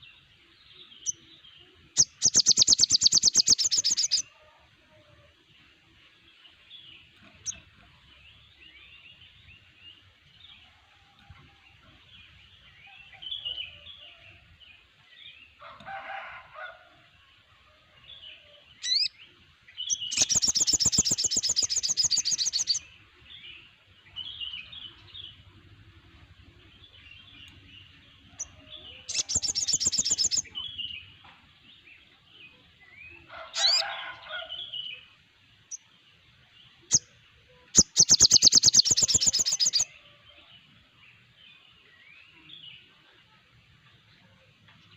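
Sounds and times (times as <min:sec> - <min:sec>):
songbirds chirping and twittering: 0:00.0 - 0:44.9
loud fast bird trill: 0:02.0 - 0:04.2, 0:37.8 - 0:39.9.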